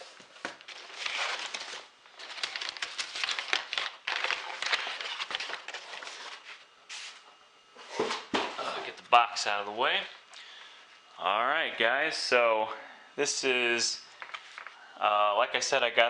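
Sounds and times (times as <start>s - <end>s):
cardboard packaging rustling: 0.0s - 7.2s.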